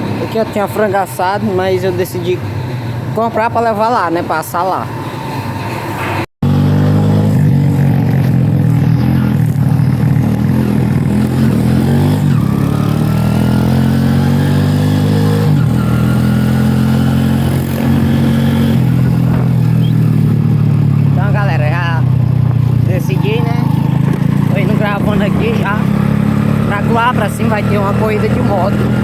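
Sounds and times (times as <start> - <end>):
motorcycle engine shifting gears: 6.4 - 29.0.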